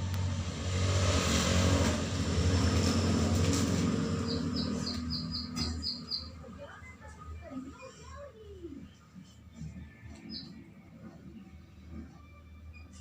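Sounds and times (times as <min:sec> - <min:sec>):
low motor rumble: 0:00.0 - 0:06.6
high chirps: 0:04.2 - 0:06.4.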